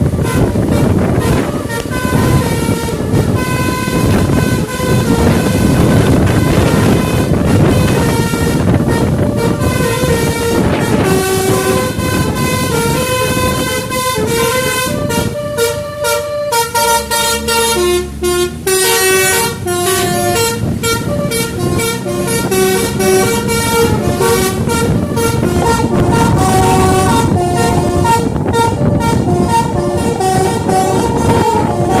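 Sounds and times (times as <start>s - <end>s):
musical bus horn playing a tune: 0.0s - 32.0s
steady rumble: 0.0s - 32.0s.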